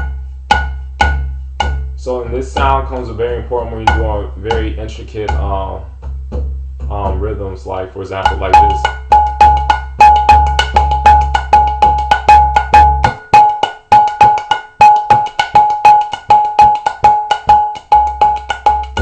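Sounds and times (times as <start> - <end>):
booming bass drum strokes: 0.0 - 13.3
drum played in fast rhythm: 0.0 - 19.0.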